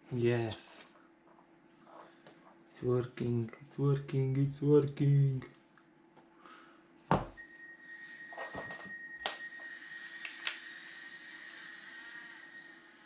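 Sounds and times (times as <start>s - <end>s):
faint high whine: 6.4s - 13.0s.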